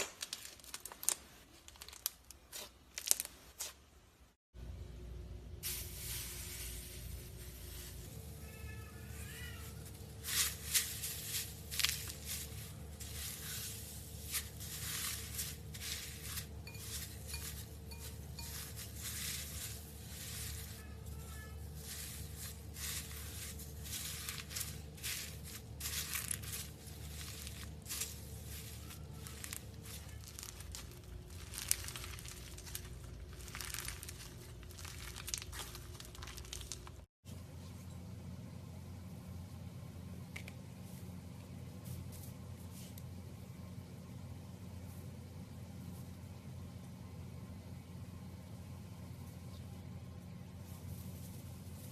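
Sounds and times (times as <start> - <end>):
slime crackling and crinkling: 0.0 - 3.8, 5.6 - 37.1
steady low hum: 4.6 - 36.5.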